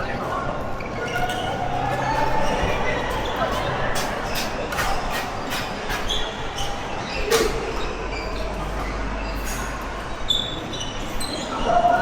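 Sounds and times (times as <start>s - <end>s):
steady hall hum: 0.0s - 12.0s
short high squeaks: 8.1s - 11.6s.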